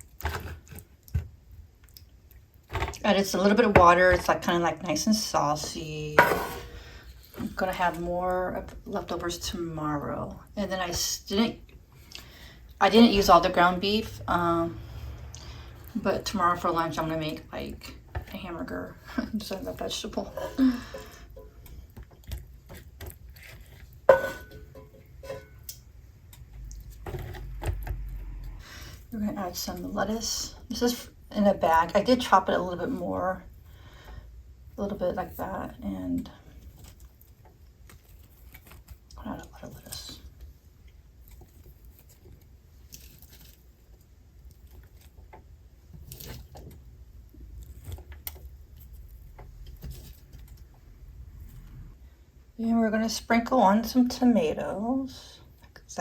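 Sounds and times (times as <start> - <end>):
lettuce rustling: 19.0 - 24.1, 36.4 - 50.7.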